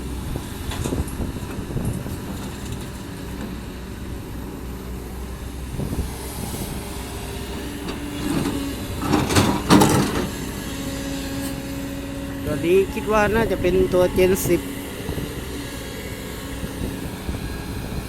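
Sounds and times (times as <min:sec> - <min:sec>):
excavator diesel engine running: 0:00.0 - 0:18.0
hydraulic whine: 0:04.9 - 0:18.0.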